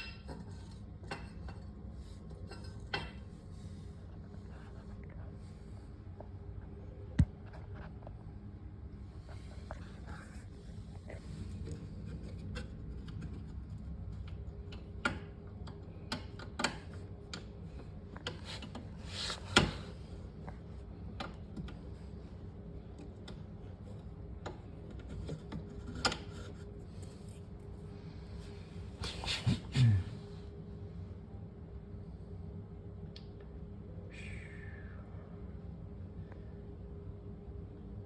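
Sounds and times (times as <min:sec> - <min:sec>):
steady low hum: 0:00.0 - 0:38.0
light clicks and knocks of parts: 0:10.9 - 0:22.1.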